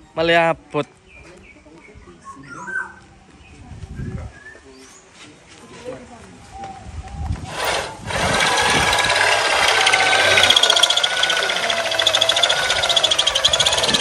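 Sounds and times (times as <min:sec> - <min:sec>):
electric power tool running: 0:07.5 - 0:14.0.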